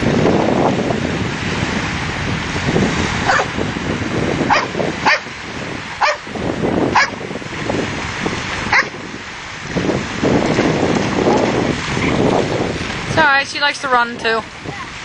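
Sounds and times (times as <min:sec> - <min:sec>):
dog barking: 0:03.2 - 0:03.5, 0:04.5 - 0:05.3, 0:06.0 - 0:06.3, 0:06.9 - 0:07.2, 0:08.7 - 0:09.0.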